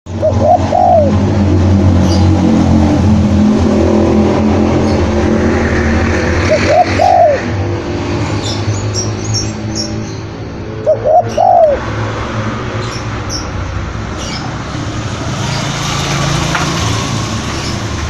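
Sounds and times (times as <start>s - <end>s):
dove cooing: 0.1s - 1.3s, 6.4s - 7.6s, 10.7s - 11.9s.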